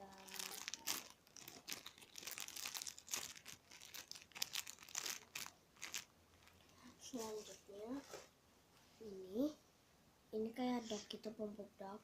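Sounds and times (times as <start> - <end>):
plastic crinkling: 0.0 - 7.6.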